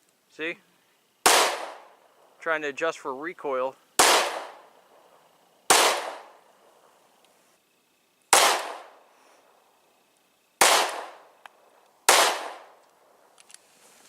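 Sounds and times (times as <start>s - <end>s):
pistol shots with echo: 1.2s - 1.9s, 4.0s - 4.7s, 5.7s - 6.4s, 8.3s - 9.0s, 10.6s - 11.3s, 12.1s - 12.8s.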